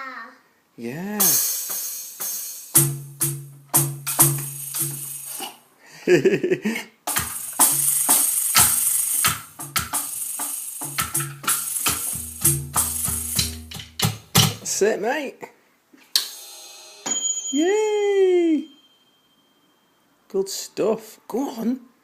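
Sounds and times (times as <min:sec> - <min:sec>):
electronic tom hits: 0:01.2 - 0:05.4, 0:07.1 - 0:14.7
electronic drums and cymbals: 0:01.2 - 0:05.6, 0:07.1 - 0:14.7, 0:16.2 - 0:17.1.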